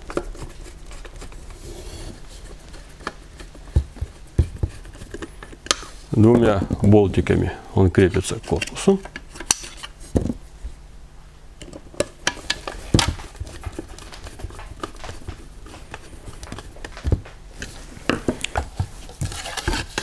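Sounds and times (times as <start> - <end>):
handling clicks and knocks: 11.6 - 20.0.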